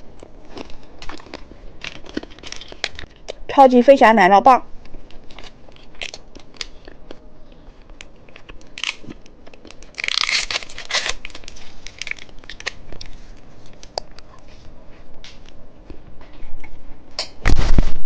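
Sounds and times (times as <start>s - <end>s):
plastic wrapper crinkling and tearing: 0.2s - 3.4s, 4.8s - 7.2s, 7.8s - 14.1s
small clicks and crackles: 0.2s - 3.4s, 4.8s - 14.4s.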